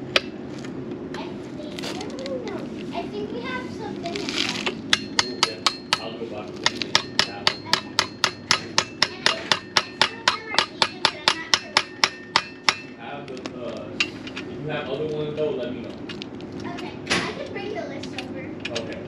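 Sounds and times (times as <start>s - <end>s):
sharp metallic taps: 4.6s - 14.5s.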